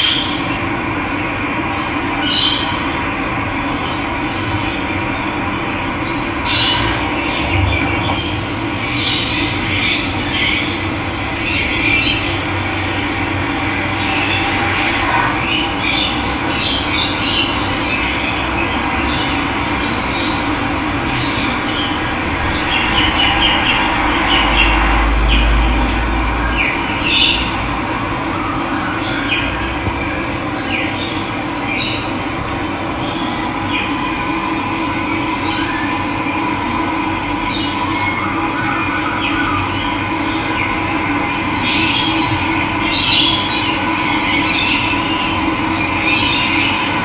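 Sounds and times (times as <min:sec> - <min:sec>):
birds chirping: 0:28.2 - 0:36.4.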